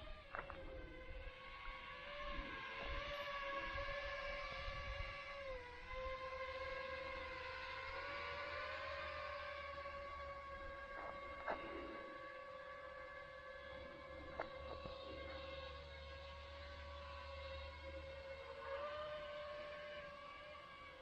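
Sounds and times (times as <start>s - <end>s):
low wind rumble: 0.0s - 8.4s
drone motors whining: 0.0s - 21.0s.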